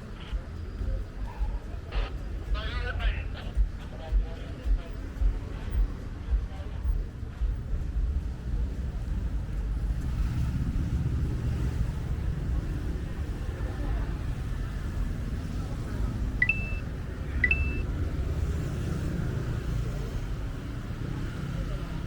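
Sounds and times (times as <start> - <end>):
traffic rumble: 0.0 - 22.0
short high beeps: 16.4 - 16.8, 17.4 - 17.8.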